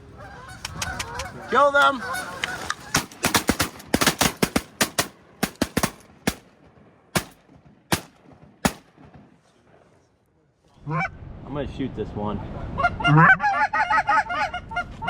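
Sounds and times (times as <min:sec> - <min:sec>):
shotgun shots: 0:02.8 - 0:09.4.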